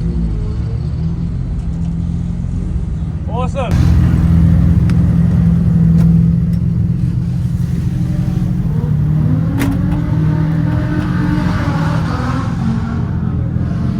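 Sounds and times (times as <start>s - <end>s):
turbocharged car engine running: 3.7s - 13.9s.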